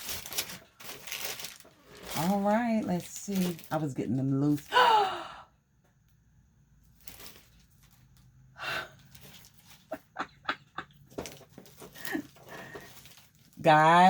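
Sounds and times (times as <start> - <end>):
paper rustling: 0.0 - 4.0, 6.9 - 8.2, 9.0 - 10.2, 10.9 - 14.0.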